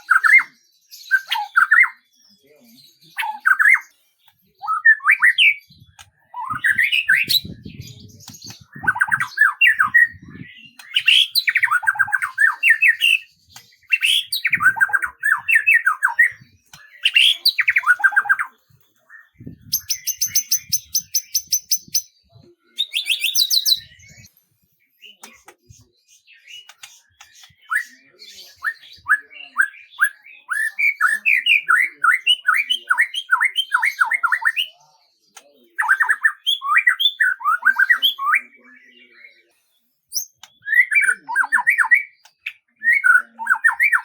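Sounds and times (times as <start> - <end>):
songbird singing: 0.0 - 44.0.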